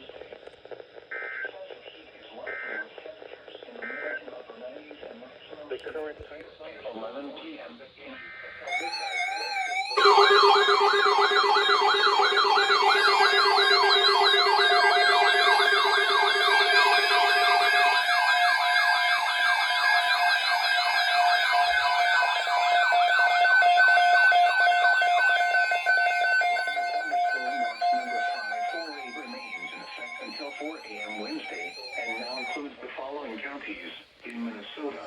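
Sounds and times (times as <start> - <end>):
electronic sirens warbling: 8.3 - 32.7
steady tones: 8.7 - 23.4.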